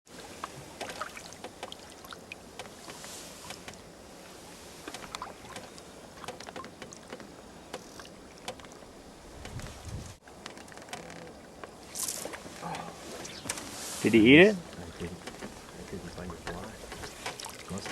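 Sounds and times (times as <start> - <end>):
river water lapping and trickling: 0.1 - 17.9
small splashes and clicks: 0.4 - 3.8, 4.8 - 9.7, 14.7 - 17.9.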